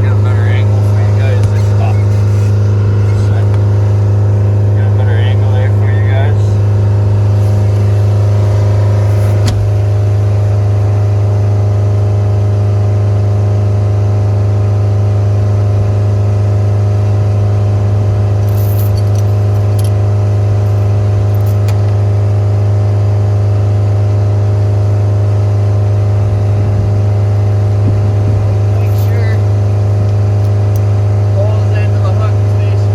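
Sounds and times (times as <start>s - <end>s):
skid steer engine running: 0.0s - 32.9s.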